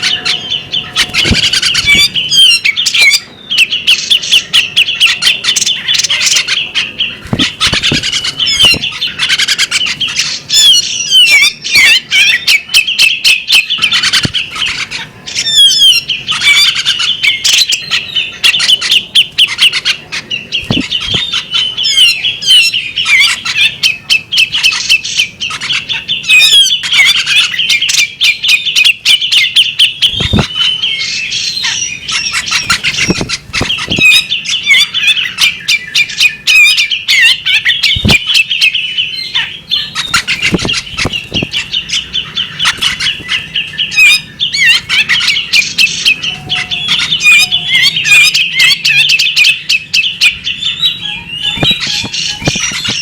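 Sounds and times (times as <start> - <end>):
bird singing: 0.0 - 53.0
thumps: 1.0 - 2.2, 7.2 - 8.9, 20.6 - 21.3, 30.1 - 30.6, 32.5 - 34.2, 37.9 - 38.3, 40.0 - 41.7, 51.5 - 53.0.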